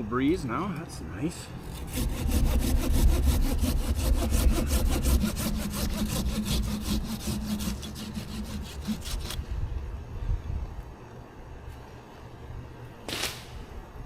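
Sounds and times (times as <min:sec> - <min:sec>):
handsaw cutting branch: 0:01.6 - 0:09.4.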